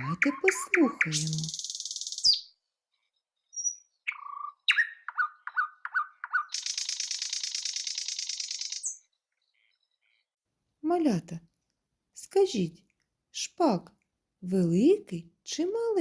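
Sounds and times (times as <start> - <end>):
nightingale singing: 0.0 - 2.6, 3.2 - 10.2.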